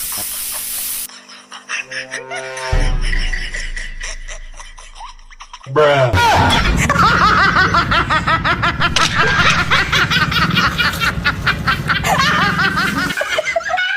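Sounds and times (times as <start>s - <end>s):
high-pitched snickering laughter: 1.1s - 2.4s.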